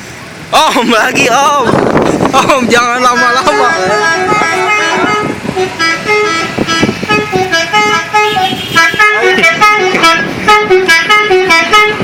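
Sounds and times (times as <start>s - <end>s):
musical vehicle horn tune: 3.1s - 12.0s.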